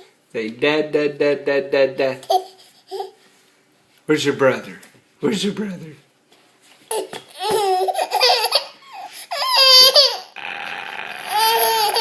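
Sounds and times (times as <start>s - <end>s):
baby squealing and laughing: 6.9s - 12.0s.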